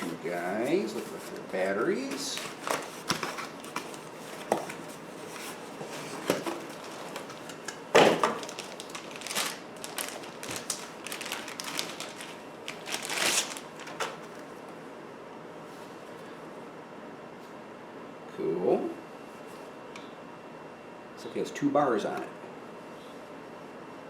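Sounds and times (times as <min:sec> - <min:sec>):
cardboard and plastic rustling: 0:00.0 - 0:14.5.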